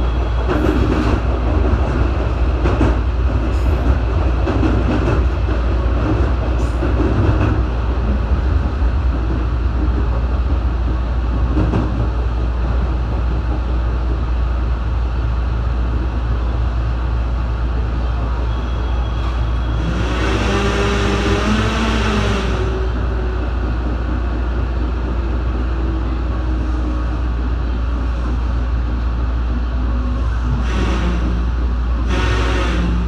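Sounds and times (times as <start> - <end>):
rail-joint clicks: 0.0 - 14.4
train wheels rumbling on rail: 0.0 - 33.0.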